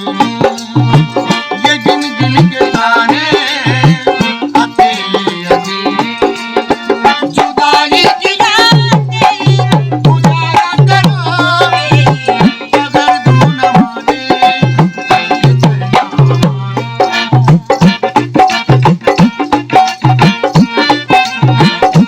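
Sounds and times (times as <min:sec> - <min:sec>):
hand drum rhythm: 0:00.0 - 0:22.0
held melody line: 0:00.0 - 0:22.0.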